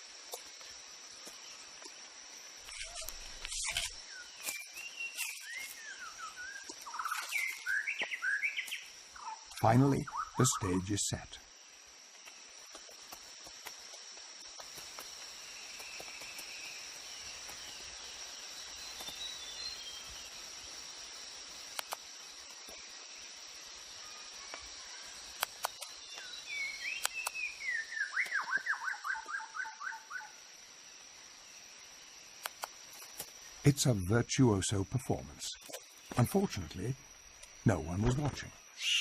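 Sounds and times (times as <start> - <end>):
high insect drone: 0.0 - 39.0
faint bird calls: 2.6 - 11.3, 23.9 - 30.4, 37.9 - 39.0
sharp clicks: 21.7 - 22.0, 25.3 - 25.9, 32.4 - 33.3.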